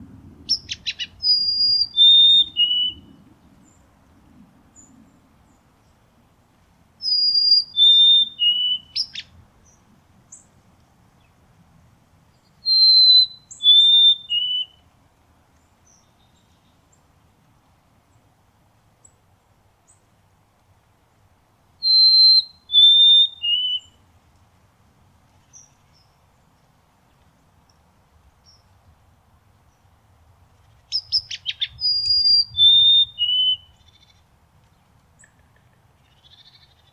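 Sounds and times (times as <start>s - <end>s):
sparrow singing whistled notes: 0.5s - 3.8s, 7.0s - 9.3s, 12.5s - 14.8s, 21.8s - 24.0s, 30.9s - 34.2s.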